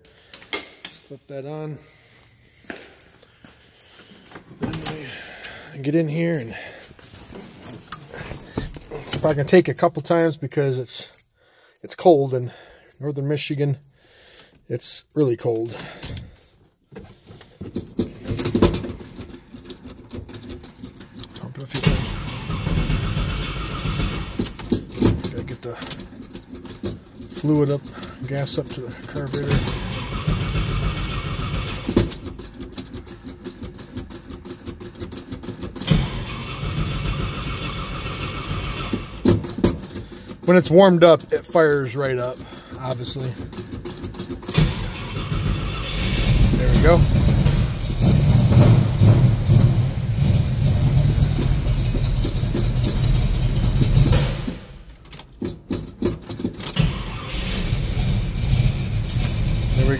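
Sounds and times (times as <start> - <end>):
engine cranked by starter: 3.4 - 10.3, 17.1 - 59.9.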